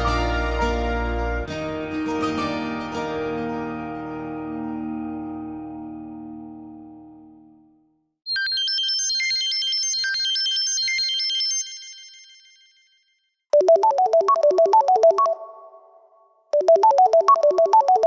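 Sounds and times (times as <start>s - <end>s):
twinkling chime melody: 8.3s - 13.2s.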